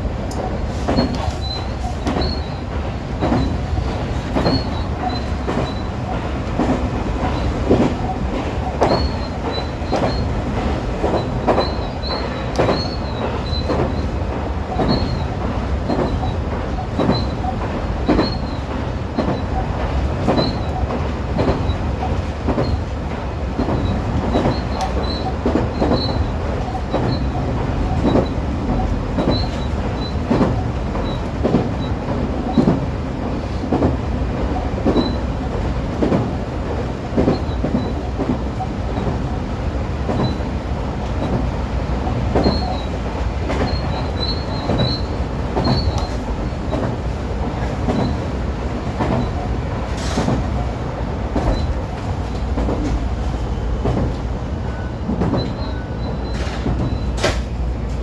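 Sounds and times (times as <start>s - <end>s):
train wheels rumbling on rails: 0.0s - 58.0s
faint wheel squeals: 43.6s - 46.2s, 54.7s - 57.5s.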